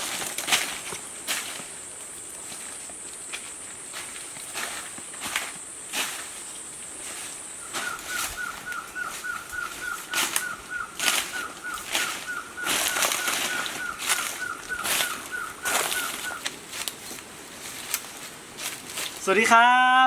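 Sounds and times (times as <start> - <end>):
rustling and crunching in leaf litter: 0.0 - 20.0
animal chirping call: 7.6 - 16.5.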